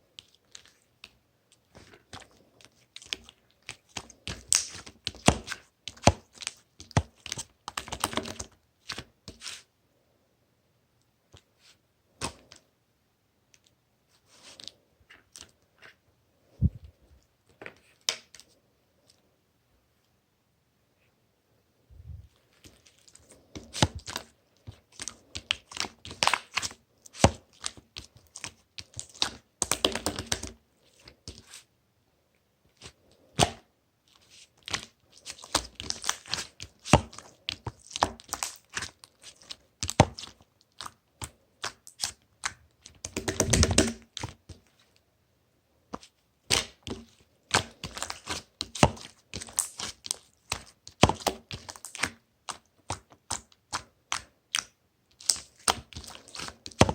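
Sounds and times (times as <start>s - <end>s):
slime squishing: 22.3s - 31.7s, 32.8s - 44.8s, 46.0s - 56.9s.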